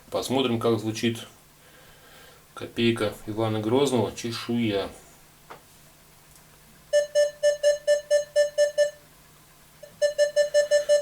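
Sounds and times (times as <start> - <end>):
metal detector rapid beeps: 6.9 - 9.0, 9.8 - 11.0.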